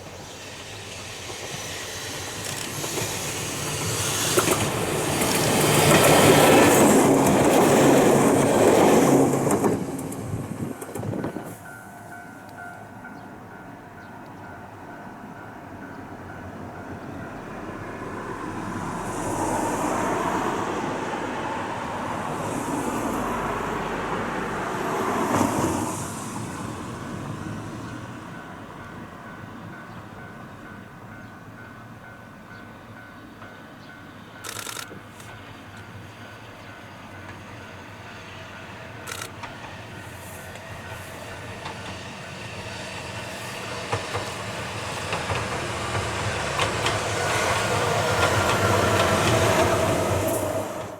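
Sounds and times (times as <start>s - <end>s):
train wheels clattering over rails: 0.0s - 12.9s, 38.6s - 50.9s.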